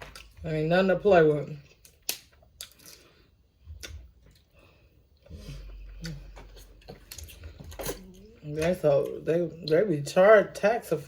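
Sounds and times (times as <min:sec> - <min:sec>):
low steady hum: 0:00.0 - 0:11.0
person chewing: 0:01.6 - 0:08.4.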